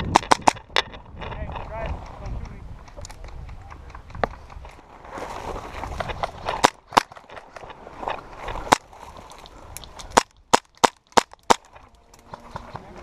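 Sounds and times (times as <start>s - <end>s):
rustling movement: 4.3s - 10.2s.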